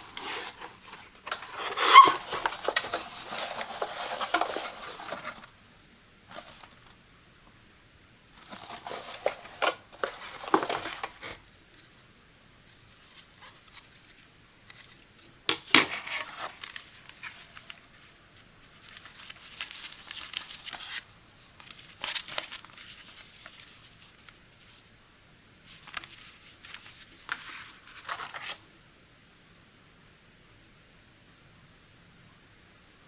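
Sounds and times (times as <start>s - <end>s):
packaging crinkling and tearing: 0.0s - 5.5s, 8.4s - 11.5s, 18.6s - 21.0s, 21.6s - 24.4s.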